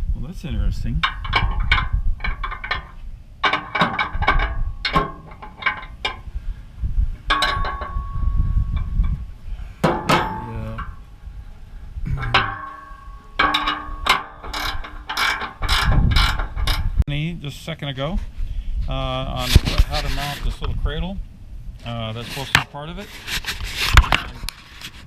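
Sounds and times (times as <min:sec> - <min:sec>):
metal parts clanking: 0:01.0 - 0:06.3, 0:07.3 - 0:09.2, 0:09.8 - 0:11.0, 0:12.2 - 0:17.0.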